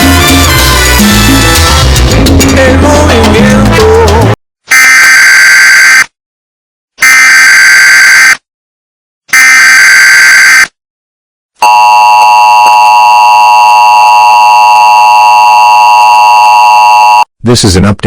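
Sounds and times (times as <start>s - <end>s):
two-tone attention signal: 11.6s - 17.3s.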